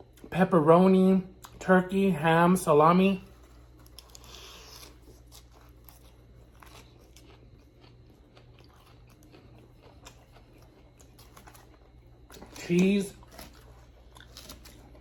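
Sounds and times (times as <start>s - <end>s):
person chewing salad: 1.4s - 1.6s, 3.3s - 15.0s.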